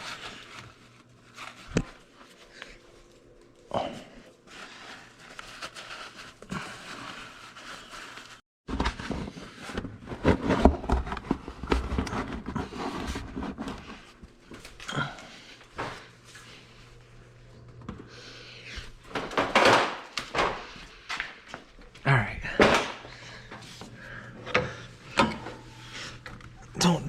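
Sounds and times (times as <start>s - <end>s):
rustling scrape: 0.0s - 3.2s, 4.4s - 14.8s.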